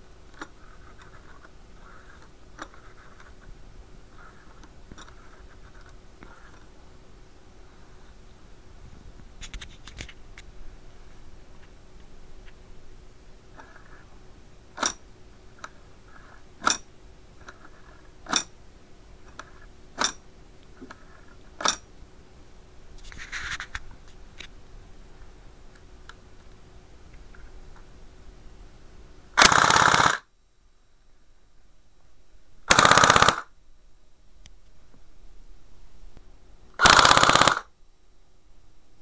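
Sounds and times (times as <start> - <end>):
airsoft gun full-auto bursts: 29.4 - 30.3, 32.7 - 33.5, 36.8 - 37.7.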